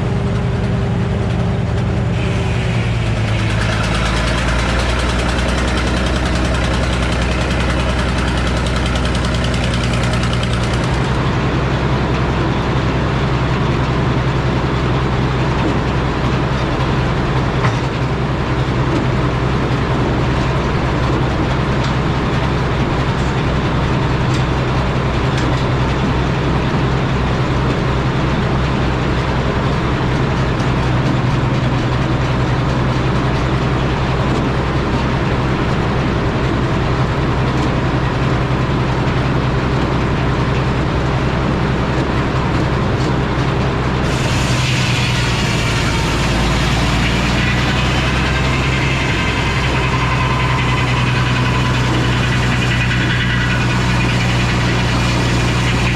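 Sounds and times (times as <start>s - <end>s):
high-pitched whine: 0.0s - 10.2s, 44.0s - 55.9s
sawmill engine humming: 0.0s - 55.9s.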